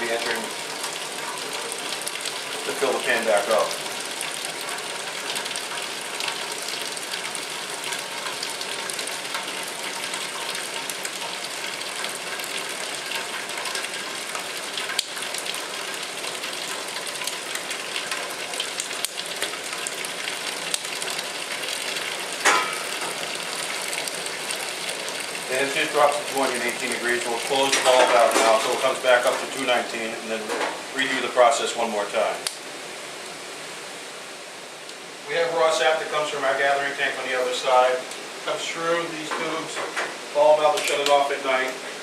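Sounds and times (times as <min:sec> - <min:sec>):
syrup boiling hiss: 0:00.0 - 0:33.0.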